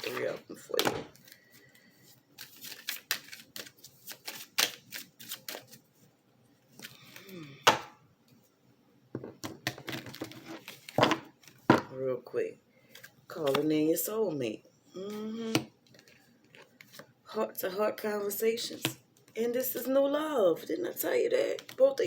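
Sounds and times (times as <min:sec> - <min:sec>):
cards being shuffled: 0:00.0 - 0:00.4, 0:02.4 - 0:05.8.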